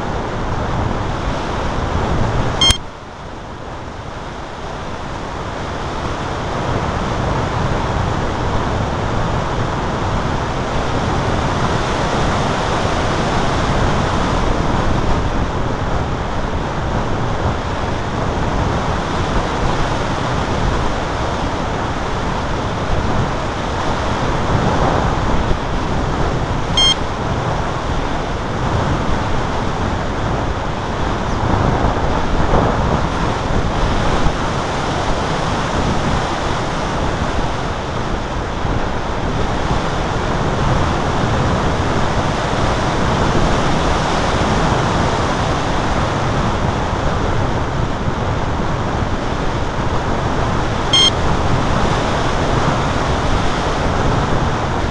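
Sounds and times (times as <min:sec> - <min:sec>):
wind rushing over microphone: 0:00.0 - 0:54.9
brief high click: 0:02.6 - 0:02.8.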